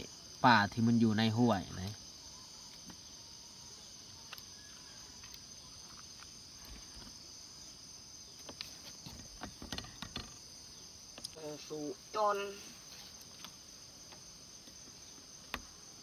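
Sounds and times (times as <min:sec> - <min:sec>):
crickets and insects chirping: 0:00.0 - 0:16.0
light clicks and knocks: 0:08.4 - 0:10.5.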